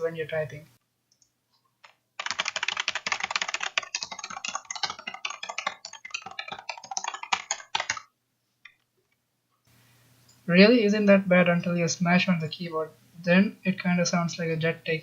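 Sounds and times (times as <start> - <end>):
keyboard keystroke clicks: 1.1 - 8.0.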